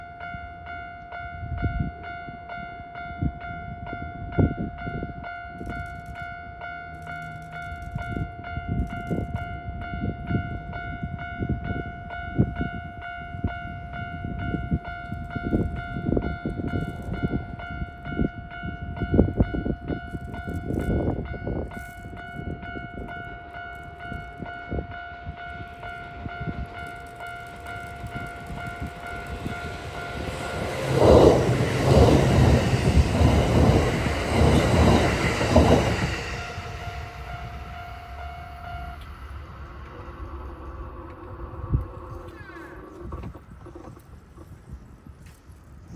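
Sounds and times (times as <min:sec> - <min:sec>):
level crossing warning bell: 0:00.0 - 0:41.4
train wheels knocking over rail joints: 0:23.8 - 0:38.1.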